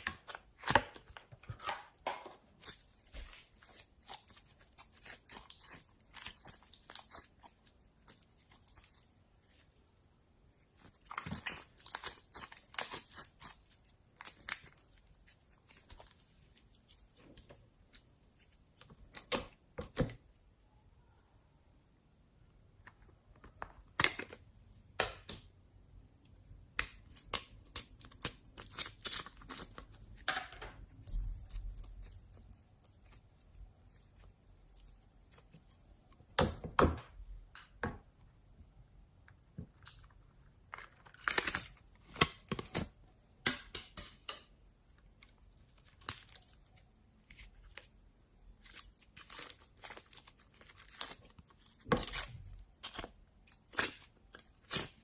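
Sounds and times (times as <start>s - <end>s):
slime crackling and popping: 2.5s - 9.1s, 10.7s - 17.9s, 26.6s - 36.9s, 45.9s - 55.0s.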